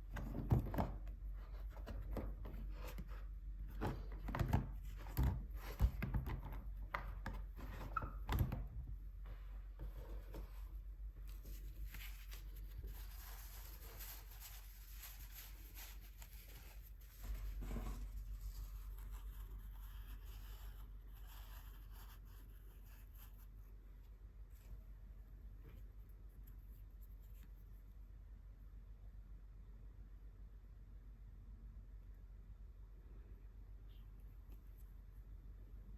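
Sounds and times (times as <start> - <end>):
soft scratchy rubbing: 9.2 - 23.8.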